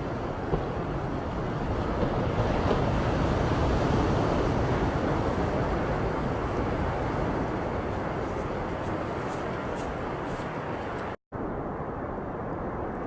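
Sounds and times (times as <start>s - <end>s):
sea waves: 0.0s - 11.2s
wind: 0.0s - 13.0s.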